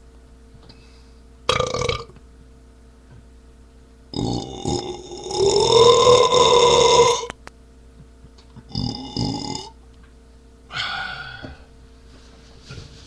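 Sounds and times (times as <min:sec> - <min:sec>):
man belching loudly: 0:01.5 - 0:02.1, 0:04.2 - 0:07.3, 0:08.7 - 0:09.8.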